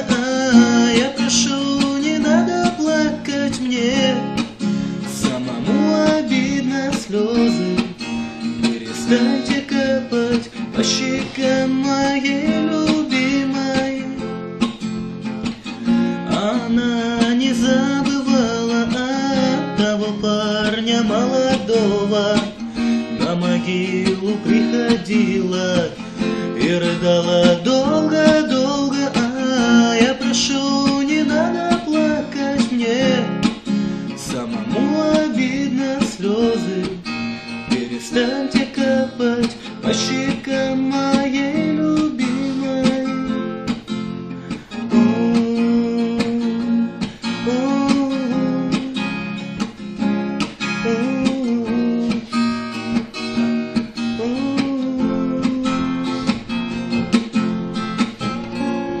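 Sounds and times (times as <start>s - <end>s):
acoustic guitar strumming: 0.0s - 59.0s.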